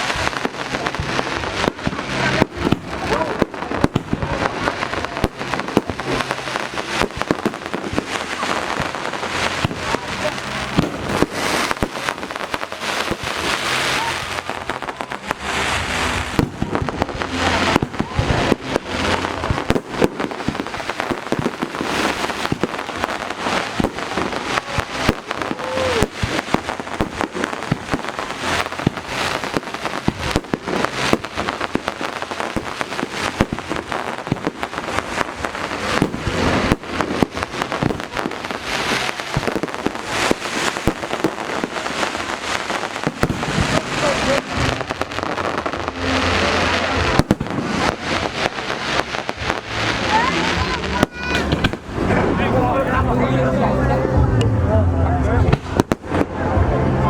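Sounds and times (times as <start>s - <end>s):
fireworks bursts and crackling: 0.0s - 57.0s.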